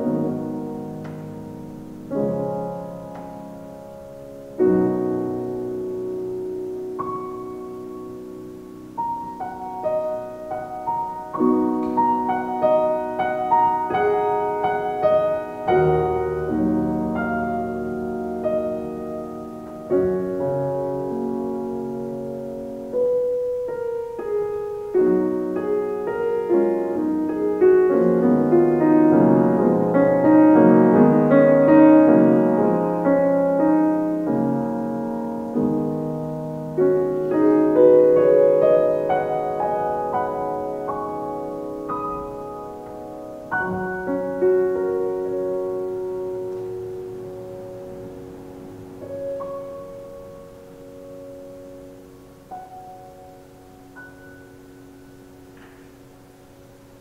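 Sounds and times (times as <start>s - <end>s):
slow solo piano piece: 0.0s - 57.0s.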